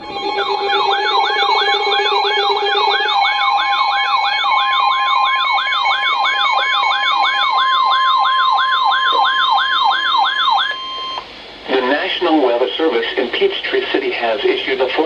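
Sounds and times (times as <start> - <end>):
electronic siren yelping: 0.0 - 11.2
steady high alert tone: 0.0 - 11.2.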